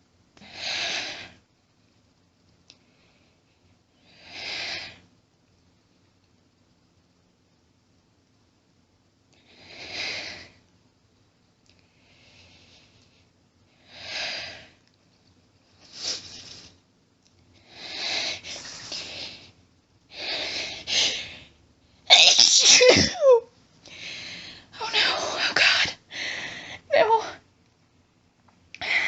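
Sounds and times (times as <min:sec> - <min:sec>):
person sneezing: 0:22.1 - 0:23.4.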